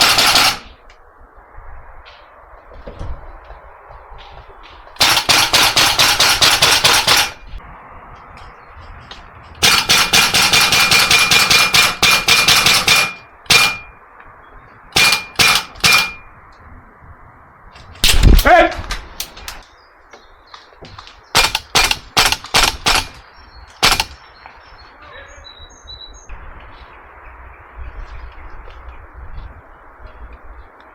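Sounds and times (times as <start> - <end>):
airsoft rifle firing: 0.0 - 0.8, 5.0 - 7.4, 9.6 - 13.8, 21.4 - 23.2, 23.8 - 24.2.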